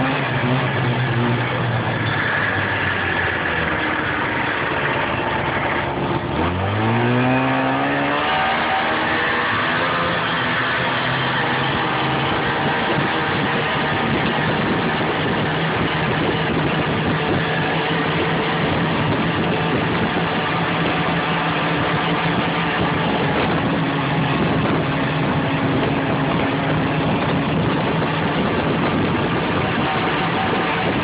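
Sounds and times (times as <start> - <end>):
snowmobile engine running: 0.0 - 31.0.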